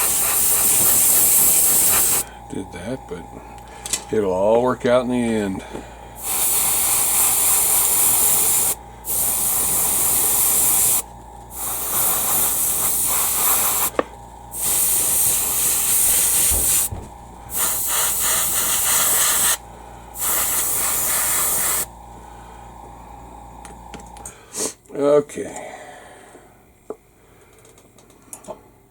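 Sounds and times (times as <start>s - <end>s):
airbrush spraying paint: 0.0s - 2.3s, 6.2s - 19.6s, 20.2s - 21.9s.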